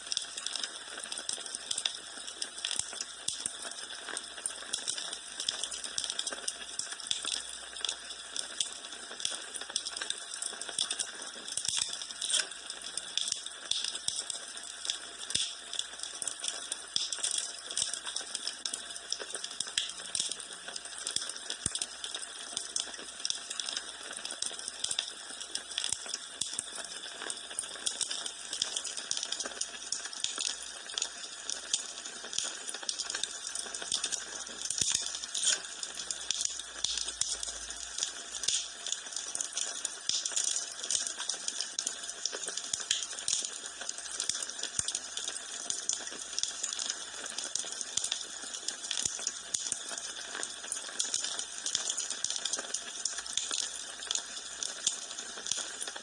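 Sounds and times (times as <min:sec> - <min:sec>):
wood fire crackling: 0:14.9 - 0:18.0, 0:28.6 - 0:48.2.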